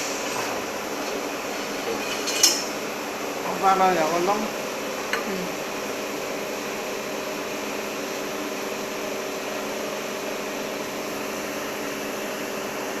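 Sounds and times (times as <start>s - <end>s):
welding hiss: 0.0s - 2.9s
welding machine hum: 0.0s - 13.0s.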